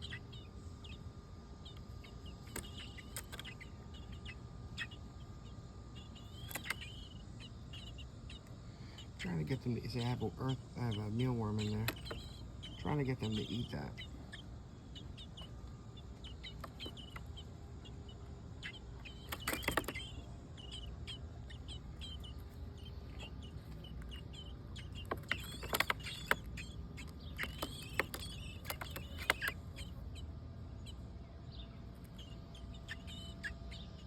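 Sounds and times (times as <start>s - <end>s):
birds chirping: 0.0s - 34.0s
sharp scratchy clicks: 24.9s - 29.6s.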